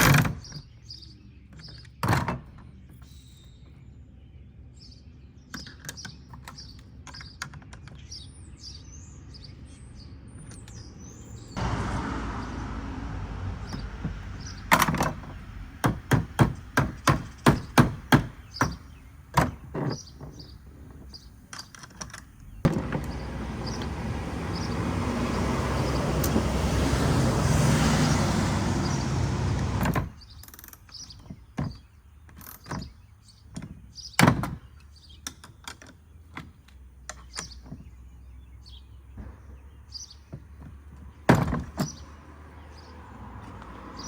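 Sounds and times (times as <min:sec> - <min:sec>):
birds chirping: 0:00.1 - 0:44.0
sharp knocks: 0:15.8 - 0:18.8.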